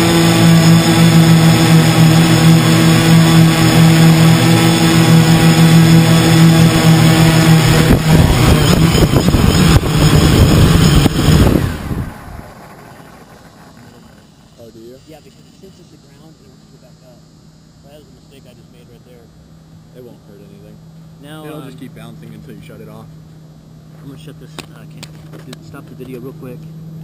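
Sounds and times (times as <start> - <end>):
drone motors humming: 0.0 - 27.0
drone knocking on ground: 4.8 - 14.3.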